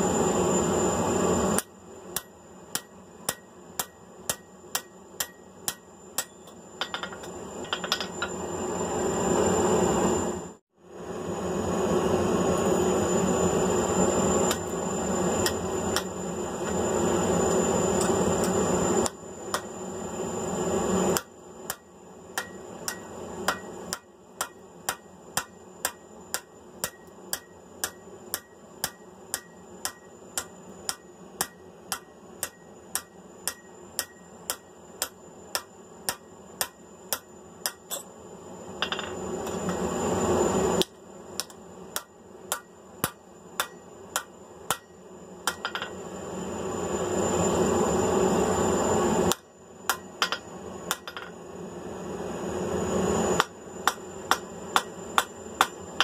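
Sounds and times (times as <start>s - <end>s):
hammer striking steel on anvil: 1.6s - 8.3s, 15.4s - 16.2s, 21.1s - 38.1s, 40.8s - 46.0s, 49.3s - 51.3s, 53.4s - 56.0s.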